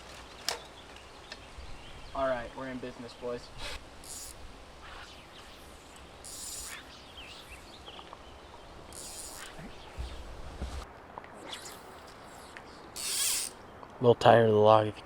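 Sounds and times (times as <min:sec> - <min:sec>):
lakeside ambience: 0:00.0 - 0:15.0
high hissing swishes: 0:02.8 - 0:13.6.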